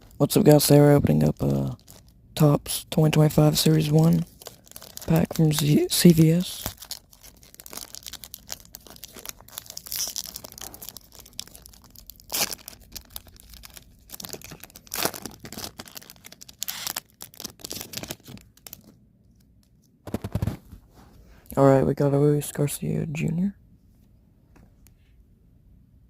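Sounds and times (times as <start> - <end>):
foil wrapper crackling: 0.0 - 2.2, 3.1 - 18.9.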